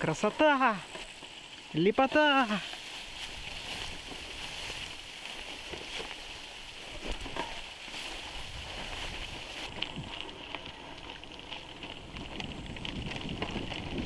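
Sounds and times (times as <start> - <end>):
constant high hiss: 0.0 - 14.0.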